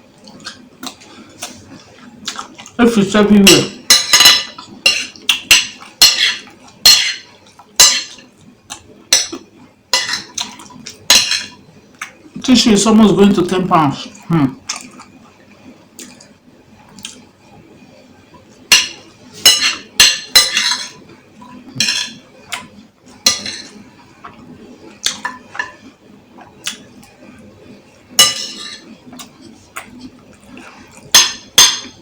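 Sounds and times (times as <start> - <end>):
cutlery clinking against a dish: 3.4 - 8.3, 9.1 - 11.6, 18.7 - 22.7, 23.3 - 23.8, 28.2 - 29.9, 31.1 - 32.0.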